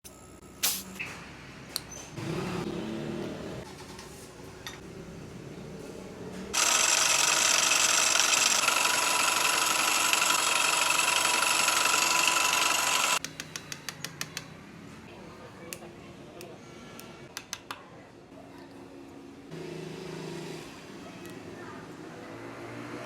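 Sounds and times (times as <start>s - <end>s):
refrigerator compressor running: 6.6s - 13.2s.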